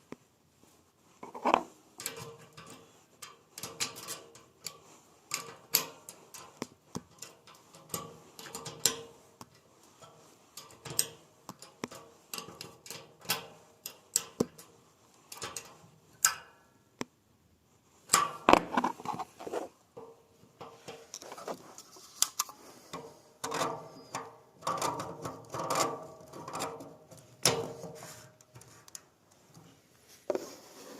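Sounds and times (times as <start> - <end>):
metallic clicks of hand tools: 2.0 - 14.7, 15.3 - 16.5.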